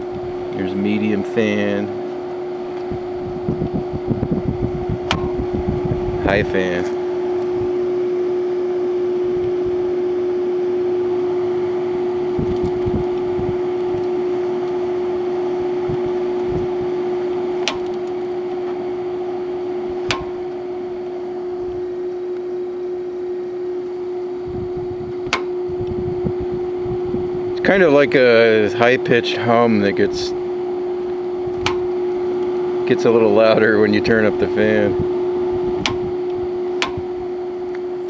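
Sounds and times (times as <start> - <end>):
air conditioner fan humming: 0.0 - 38.0
sharp clicks: 17.6 - 18.3, 20.0 - 20.6, 31.6 - 32.0, 35.8 - 37.1.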